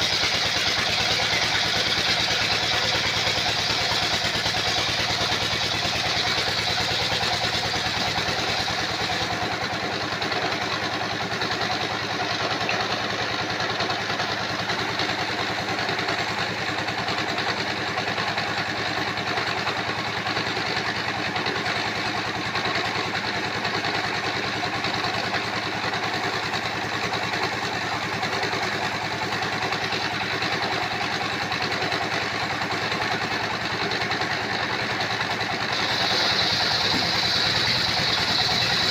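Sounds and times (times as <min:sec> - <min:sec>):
sawmill engine running: 0:00.0 - 0:38.9
high hiss: 0:35.7 - 0:38.8.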